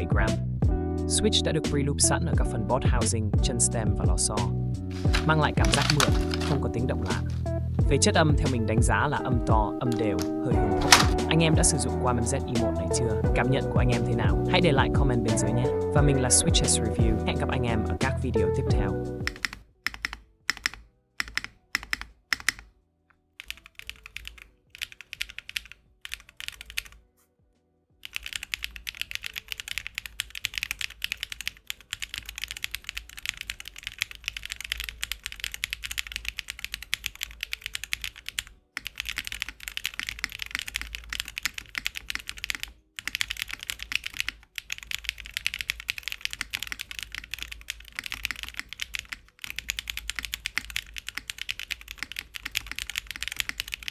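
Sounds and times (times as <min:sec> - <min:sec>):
mechanical keyboard typing: 0:05.0 - 0:07.4, 0:09.9 - 0:11.4, 0:19.2 - 0:22.7, 0:23.4 - 0:27.0, 0:28.0 - 0:53.9.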